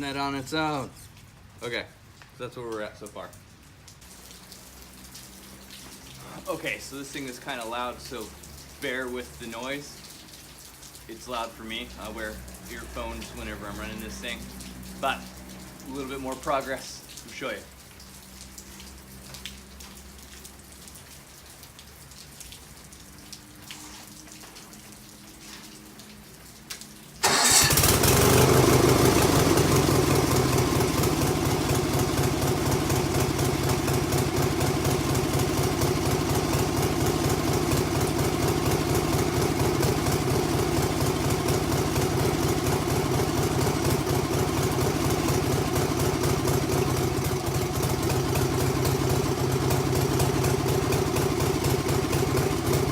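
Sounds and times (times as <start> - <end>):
stump grinder engine running: 27.2 - 52.9.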